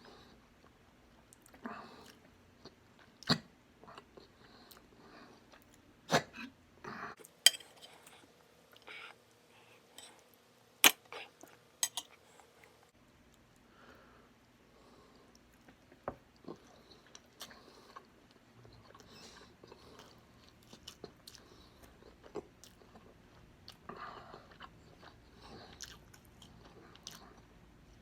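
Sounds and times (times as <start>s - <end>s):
close chewing and mouth sounds: 0.0s - 5.9s, 15.0s - 28.0s
dishes clinking: 11.8s - 12.1s.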